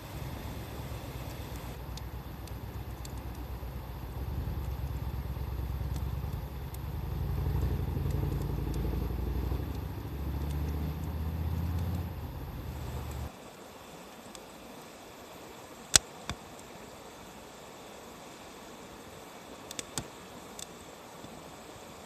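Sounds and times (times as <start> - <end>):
vehicle engine rumbling: 0.0 - 13.3
campfire crackling: 0.0 - 18.6, 19.2 - 21.8.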